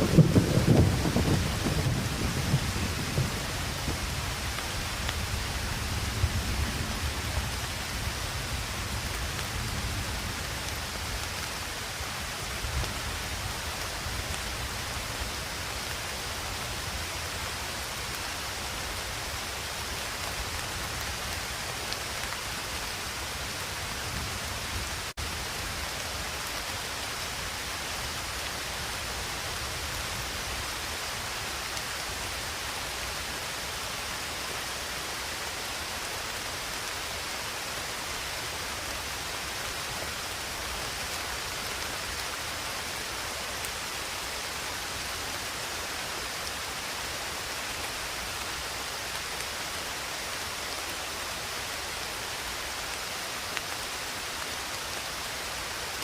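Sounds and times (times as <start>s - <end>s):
distant thunder rumble: 0.0s - 4.1s
steady rain falling: 0.0s - 56.0s.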